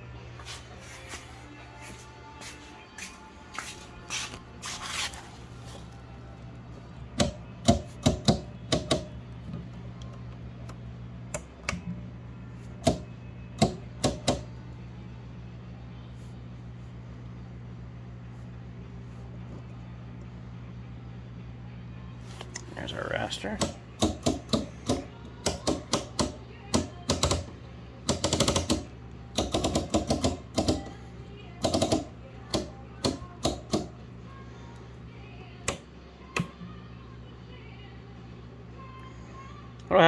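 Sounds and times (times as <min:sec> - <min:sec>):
low electrical hum: 0:00.0 - 0:40.0
sharp clicks and clunks: 0:07.2 - 0:12.0, 0:12.8 - 0:14.5.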